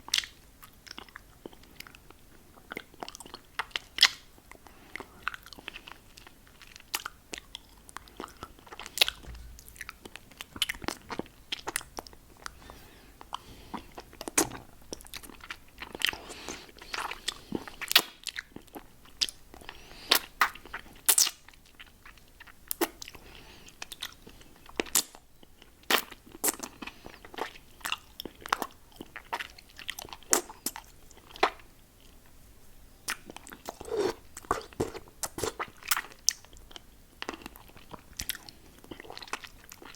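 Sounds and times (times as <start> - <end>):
mouth licking and sucking candy: 33.1 - 36.3.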